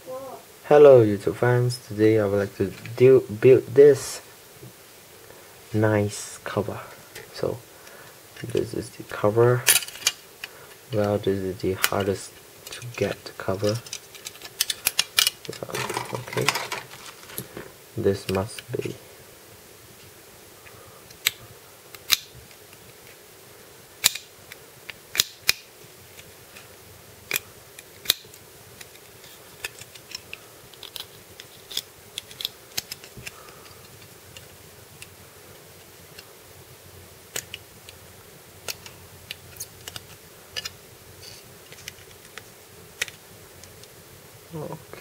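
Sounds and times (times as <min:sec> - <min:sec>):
plastic parts clicking: 0:11.8 - 0:17.6, 0:27.3 - 0:35.1, 0:37.3 - 0:37.6, 0:38.6 - 0:40.8, 0:41.6 - 0:43.9.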